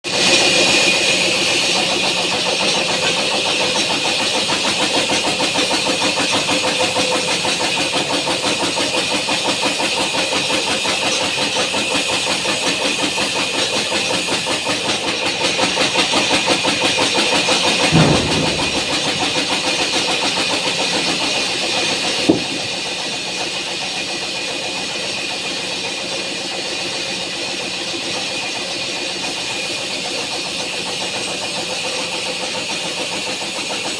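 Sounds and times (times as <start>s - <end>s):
sharp click: 18.0s - 19.6s
thump: 18.0s - 20.0s, 22.3s - 22.8s.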